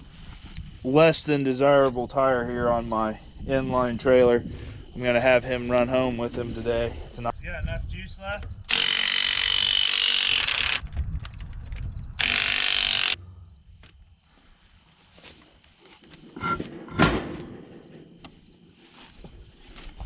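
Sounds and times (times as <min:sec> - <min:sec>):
impact wrench running in bursts: 0:08.7 - 0:10.8, 0:12.2 - 0:13.2.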